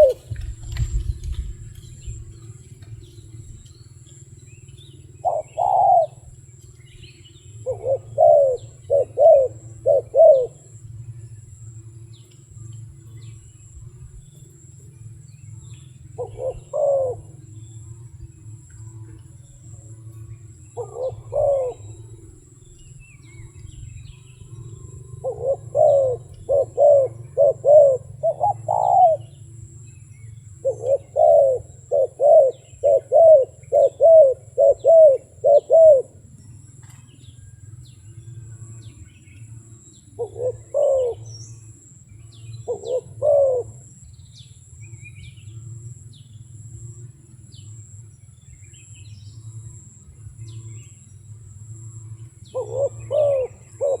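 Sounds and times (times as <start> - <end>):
dove cooing: 0.0 - 11.5, 16.0 - 18.2, 20.5 - 37.7, 40.1 - 44.0, 52.3 - 54.0
steady low hum: 0.0 - 54.0.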